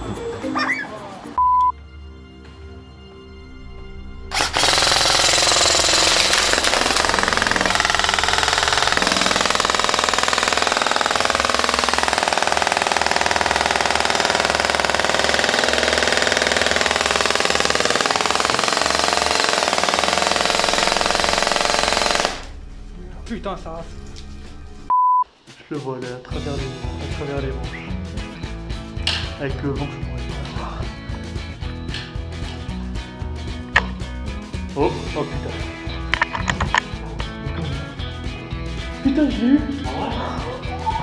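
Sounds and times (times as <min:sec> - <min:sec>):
loud fast rattle: 0:04.3 - 0:22.8.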